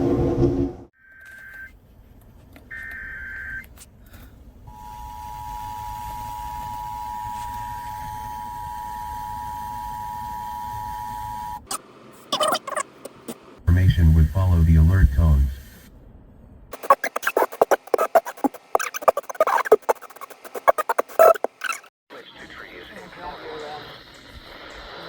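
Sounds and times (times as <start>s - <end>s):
faint radio hiss: 13.7s - 15.9s, 22.1s - 25.0s
warbling data tones: 16.7s - 21.9s.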